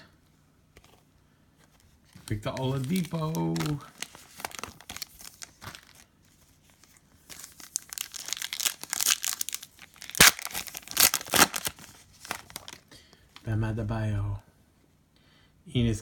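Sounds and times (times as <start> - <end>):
trading cards rustling: 1.6 - 12.8.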